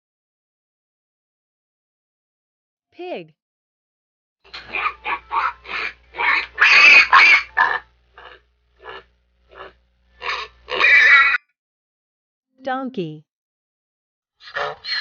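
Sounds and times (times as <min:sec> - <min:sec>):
pig grunting and squealing: 0:04.5 - 0:11.4, 0:14.4 - 0:15.0.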